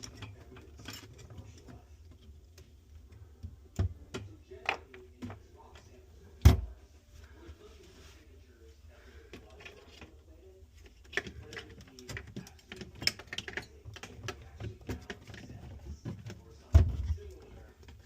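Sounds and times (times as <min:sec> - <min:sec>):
hands clicking and tapping parts: 0:10.8 - 0:18.0.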